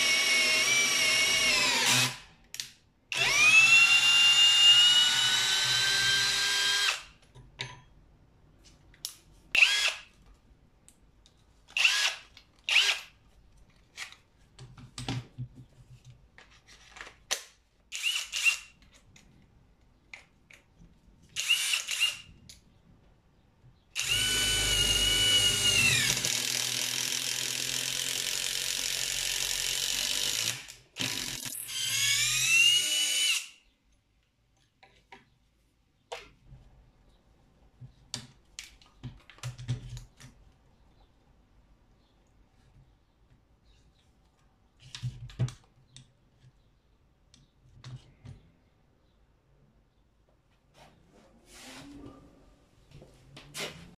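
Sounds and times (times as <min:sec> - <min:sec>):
cordless drill motor whining: 0:00.0 - 0:02.2, 0:03.1 - 0:07.0, 0:11.8 - 0:13.0, 0:21.4 - 0:22.2, 0:24.0 - 0:33.5.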